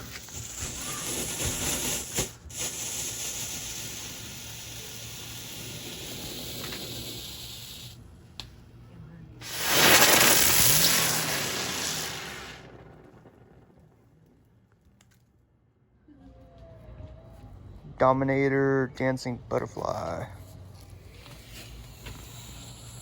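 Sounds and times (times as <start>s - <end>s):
firework hissing: 0.0s - 8.1s, 9.4s - 13.8s, 21.0s - 23.0s
firework pop: 9.4s - 13.8s.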